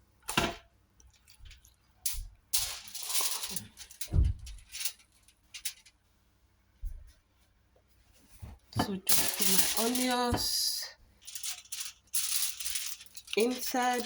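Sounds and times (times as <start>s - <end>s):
rustle: 2.6s - 6.0s, 11.2s - 14.0s
dull thump: 4.1s - 4.6s.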